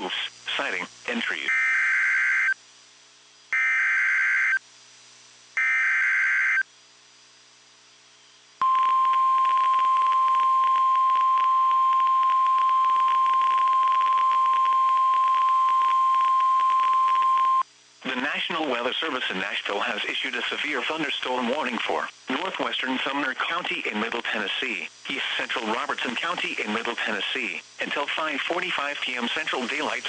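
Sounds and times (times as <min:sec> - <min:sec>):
crackly static: 0:00.0 - 0:30.0
steady alarm tone: 0:05.6 - 0:06.6.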